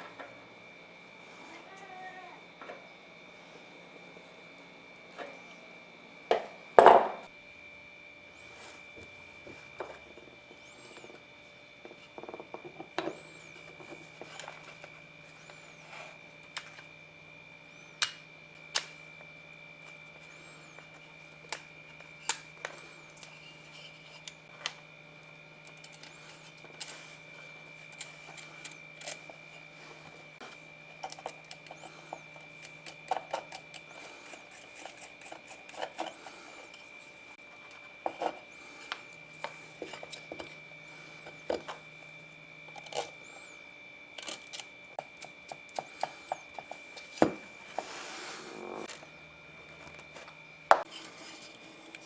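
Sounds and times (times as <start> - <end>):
faint steady hum: 0.0 - 52.0
small parts clicking and tapping: 25.6 - 27.1, 27.8 - 29.7, 30.4 - 36.9, 44.2 - 47.2.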